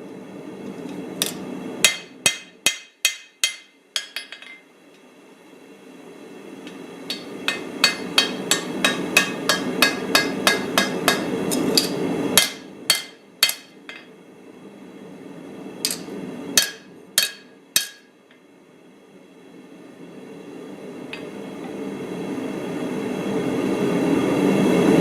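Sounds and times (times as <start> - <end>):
hammer striking steel on anvil: 1.2 - 4.6, 7.1 - 14.1, 15.8 - 18.2.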